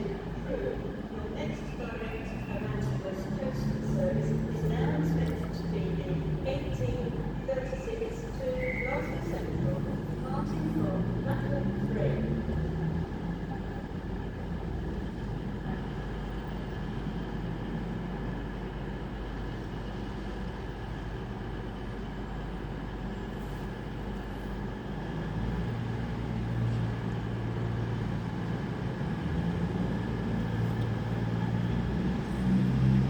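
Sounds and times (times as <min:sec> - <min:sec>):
train hum and whine: 0:00.0 - 0:33.0.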